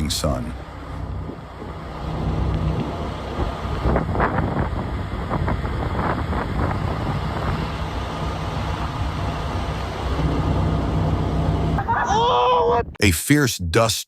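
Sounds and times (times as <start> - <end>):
wind buffeting microphone: 1.0 - 11.9.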